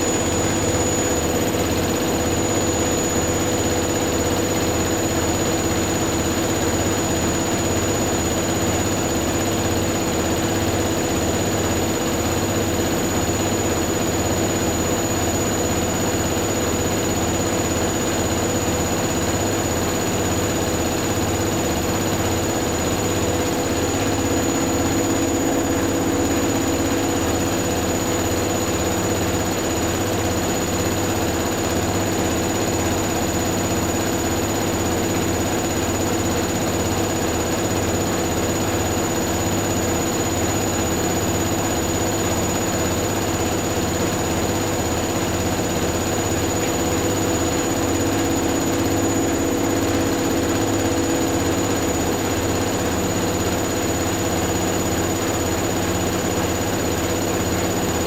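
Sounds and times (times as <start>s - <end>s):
washing machines spinning: 0.0s - 58.0s.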